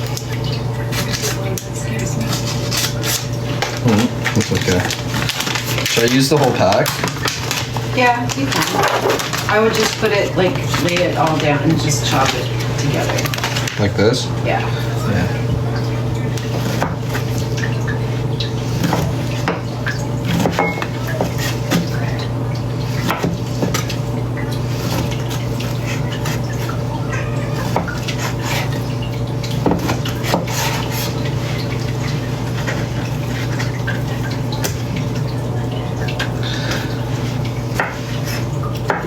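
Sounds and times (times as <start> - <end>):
knife chopping on cutting board: 23.0 - 23.7, 29.6 - 31.0.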